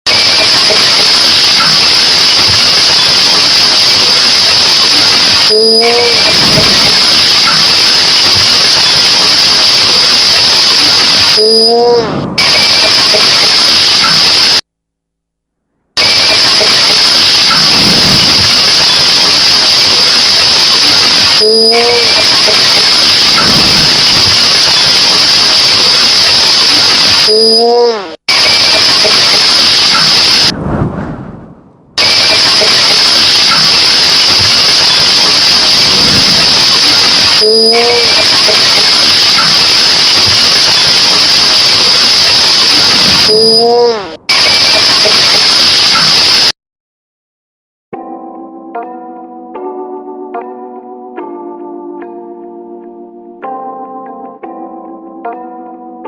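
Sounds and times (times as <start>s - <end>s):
constant high tone: 0.1s - 14.6s, 16.0s - 30.5s, 32.0s - 46.2s
emergency alert alarm: 0.1s - 14.6s, 16.0s - 30.5s, 32.0s - 46.5s
loud static hiss: 0.1s - 14.7s, 16.0s - 30.5s, 32.0s - 46.6s
short steady tones: 32.0s - 46.5s.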